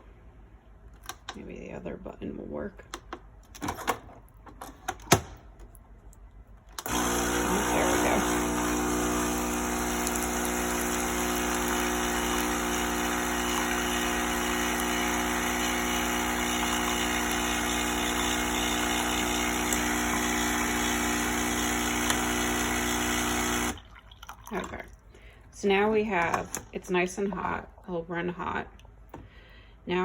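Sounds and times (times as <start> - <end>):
coffee machine pump humming: 6.8 - 24.6.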